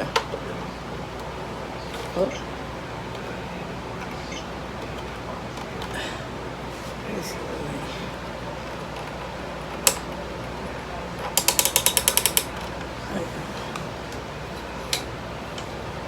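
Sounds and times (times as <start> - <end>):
ratcheting clicks: 11.2 - 12.7
plastic parts clicking: 11.2 - 12.9.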